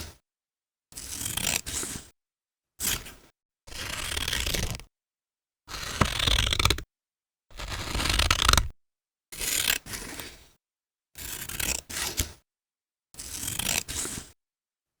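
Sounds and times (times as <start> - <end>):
scissors cutting paper: 2.8 - 4.8, 5.7 - 6.8, 7.5 - 8.8, 11.2 - 12.4.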